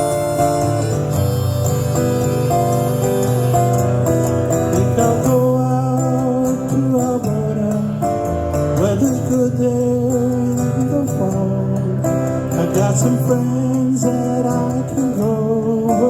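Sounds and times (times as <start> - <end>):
keyboard chords: 0.0 - 12.7
person singing: 0.0 - 16.0
strummed guitar: 0.0 - 16.0.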